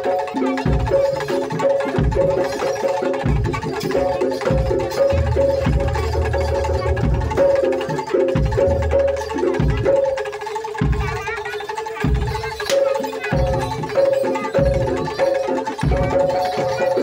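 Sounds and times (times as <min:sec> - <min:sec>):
held melody line: 0:00.0 - 0:17.0
wood-block knocks: 0:00.0 - 0:17.0
low drum strokes: 0:05.1 - 0:09.9.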